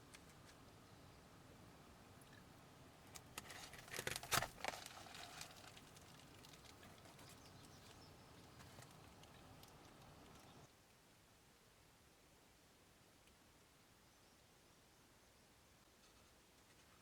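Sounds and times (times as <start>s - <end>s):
faint steady hiss: 0.0s - 17.0s
soft clicks and rustling: 3.1s - 10.6s.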